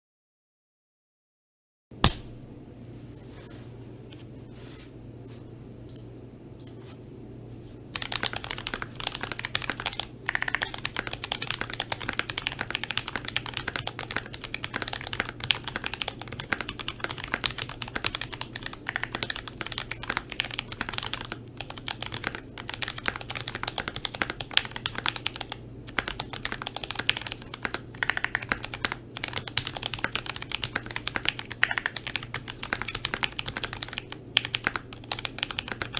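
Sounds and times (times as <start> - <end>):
mechanical keyboard typing: 8.0 - 35.9.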